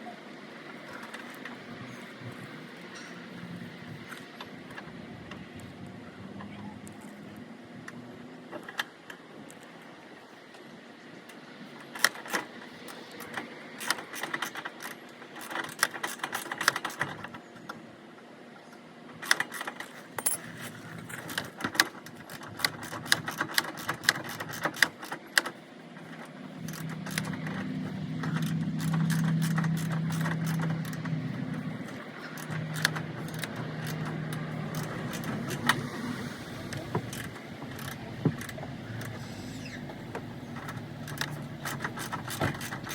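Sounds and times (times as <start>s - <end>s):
metal parts clinking and rattling: 19.3s - 21.6s
steady low hum: 20.0s - 42.9s.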